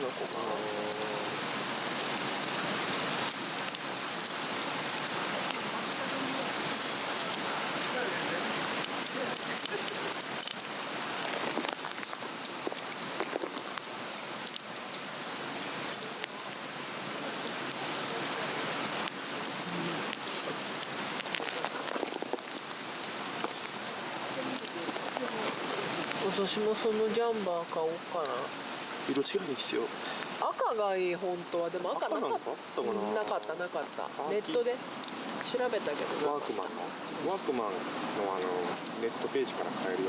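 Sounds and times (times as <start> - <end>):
log fire crackling and popping: 0.0 - 40.0.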